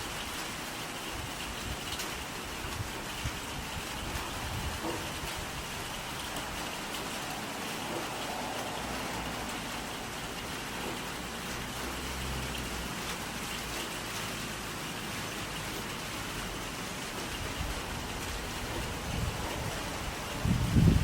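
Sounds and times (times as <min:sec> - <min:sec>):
steady rain hiss: 0:00.0 - 0:21.0
wind buffeting microphone: 0:01.2 - 0:06.7, 0:17.3 - 0:21.0.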